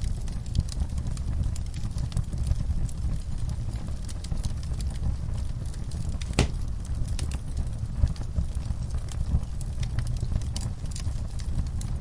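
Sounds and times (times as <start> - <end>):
low rumble of flames: 0.0 - 12.0
wood fire crackling and popping: 0.0 - 12.0.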